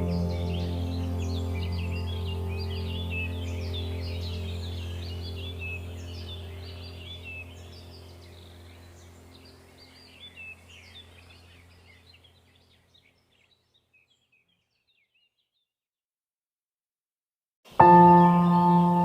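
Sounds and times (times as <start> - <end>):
low hum: 0.0 - 11.8
songbirds chirping: 0.0 - 15.8, 17.7 - 19.0.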